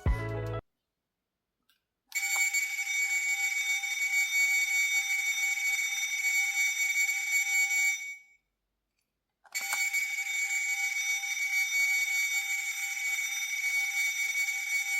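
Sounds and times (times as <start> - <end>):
shrill electric bell ringing: 2.2 - 8.2, 9.6 - 14.9.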